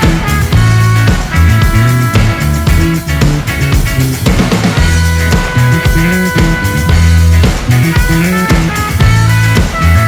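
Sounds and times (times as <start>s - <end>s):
rock band playing: 0.0s - 10.0s.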